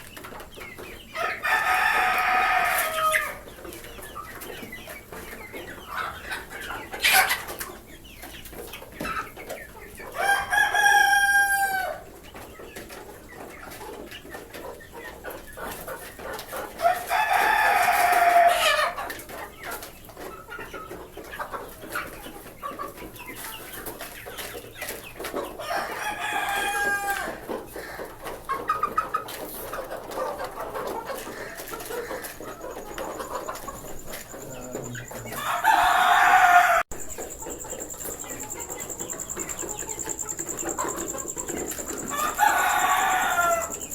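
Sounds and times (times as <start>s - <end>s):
hens clucking: 0.0s - 43.9s
roosters crowing: 1.1s - 3.5s, 10.1s - 12.2s, 16.8s - 19.1s, 25.5s - 28.2s, 31.1s - 43.9s.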